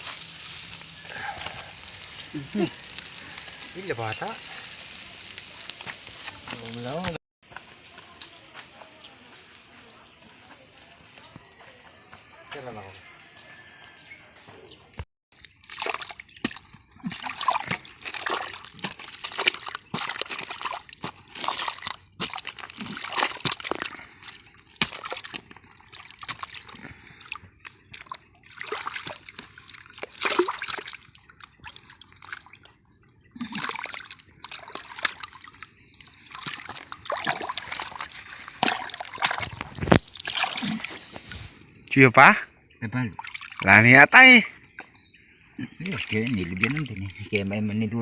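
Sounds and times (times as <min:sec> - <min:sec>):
steady high hiss: 0:00.0 - 0:10.2
hands splashing in muddy water: 0:15.4 - 0:32.7, 0:33.4 - 0:41.5, 0:43.2 - 0:43.8, 0:45.6 - 0:47.4.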